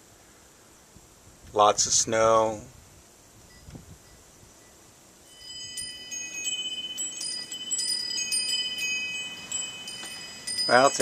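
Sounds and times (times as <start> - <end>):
metal wind chimes jingling: 3.5 - 11.0.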